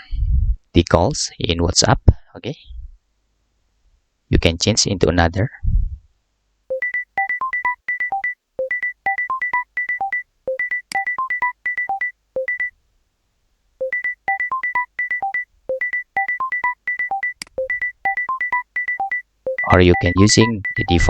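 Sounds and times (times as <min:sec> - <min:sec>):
beeping phone ringtone: 0:06.7 - 0:12.7, 0:13.8 - 0:21.0.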